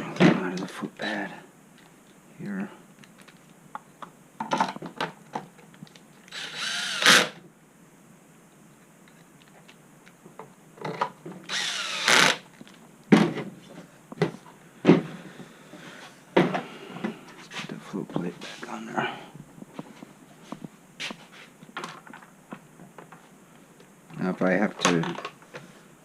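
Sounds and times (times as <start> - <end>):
electric drill running: 6.3 - 7.4, 11.5 - 12.4.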